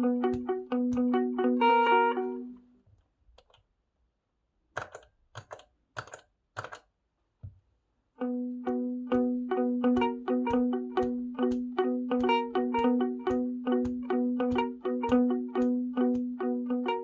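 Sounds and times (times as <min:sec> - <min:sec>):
electric guitar with delay: 0:00.0 - 0:02.6, 0:08.2 - 0:17.0
muted scratchy guitar strums: 0:00.0 - 0:02.6, 0:08.2 - 0:17.0.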